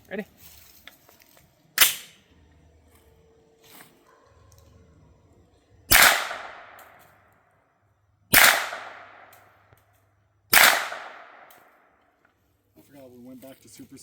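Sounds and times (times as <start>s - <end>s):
suppressed gunshots with echo: 1.8s - 2.2s, 5.9s - 7.2s, 8.3s - 9.6s, 10.5s - 11.9s.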